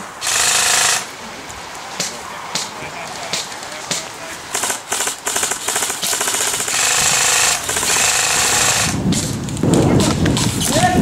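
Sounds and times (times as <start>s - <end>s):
airsoft gun rapid bursts: 0.2s - 1.1s, 4.5s - 9.0s.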